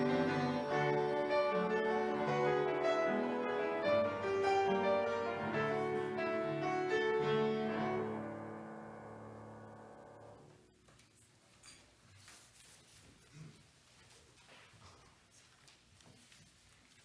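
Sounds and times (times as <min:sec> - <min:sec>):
piano playing slow melody: 0:00.0 - 0:10.5.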